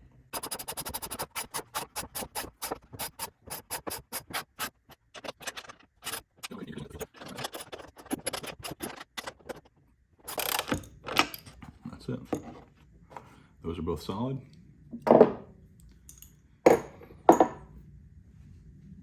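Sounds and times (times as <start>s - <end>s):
scraping: 0.4s - 10.7s.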